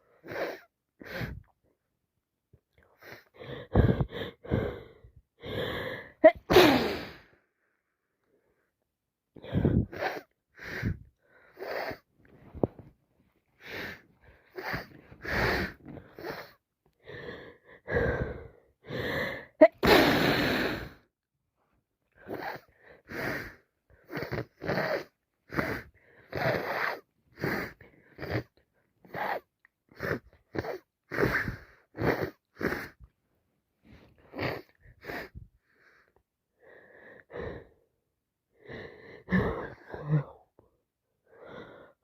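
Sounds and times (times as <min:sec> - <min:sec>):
person sneezing: 0:06.2 - 0:07.3, 0:19.6 - 0:20.8
quick wheezy breaths: 0:09.4 - 0:12.9, 0:13.5 - 0:21.1, 0:22.2 - 0:33.1, 0:33.8 - 0:37.9.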